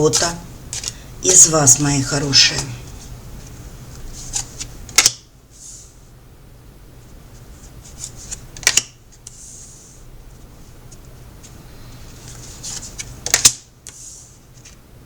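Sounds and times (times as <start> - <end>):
cards snapping and tapping: 4.4 - 5.3, 8.3 - 9.0, 13.3 - 13.7.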